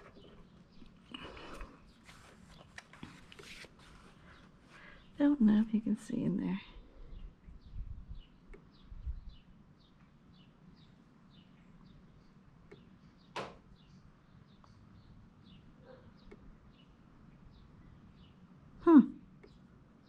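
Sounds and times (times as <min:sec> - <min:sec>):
bird chirping: 0:06.4 - 0:18.5, 0:19.4 - 0:19.8.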